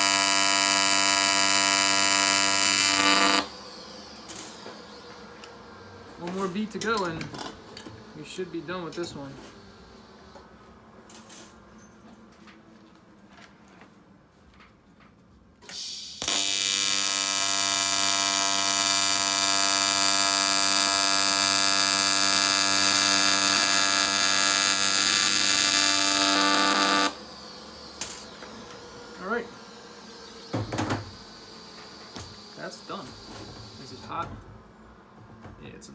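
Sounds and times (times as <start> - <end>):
welding arc buzzing: 0.0 - 10.0, 15.7 - 34.2.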